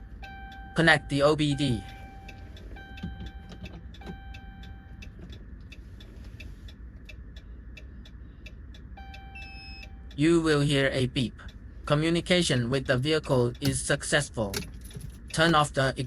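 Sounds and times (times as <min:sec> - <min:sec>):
electronic beeps: 0:09.0 - 0:10.1
hazard light flasher ticking: 0:12.8 - 0:15.8.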